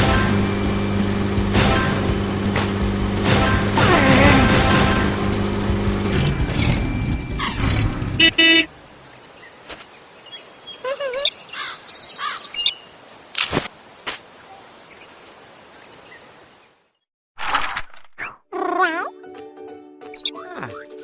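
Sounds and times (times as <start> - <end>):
cartoon engine falling pitch sweep: 3.7 - 5.0
car horn honk: 8.1 - 8.7
bird chirps: 10.2 - 12.9, 20.2 - 20.9.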